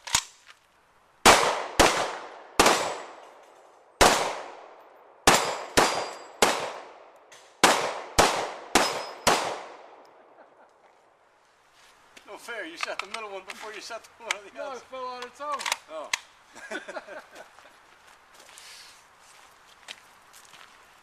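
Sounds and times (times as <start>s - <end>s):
pistol shots: 1.2s - 3.4s, 4.0s - 10.0s.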